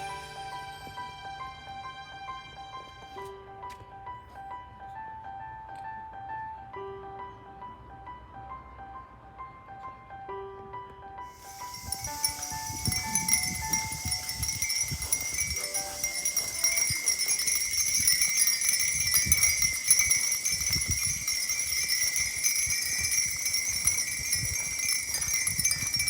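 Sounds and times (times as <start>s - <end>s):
cicadas shrilling: 11.3s - 26.0s
wind rumble on microphone: 11.4s - 26.0s.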